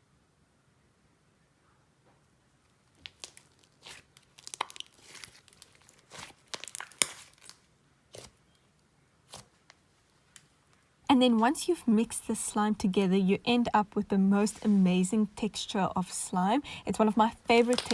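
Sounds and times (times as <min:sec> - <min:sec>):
slime crackling and popping by hand: 0:02.8 - 0:08.4, 0:17.6 - 0:17.9.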